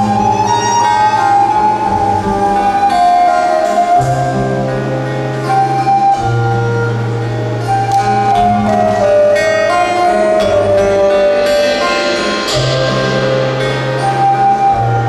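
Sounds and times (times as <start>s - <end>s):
ensemble melody line: 0.0s - 15.0s
long held bass notes: 0.0s - 15.0s
quick struck notes: 7.6s - 15.0s.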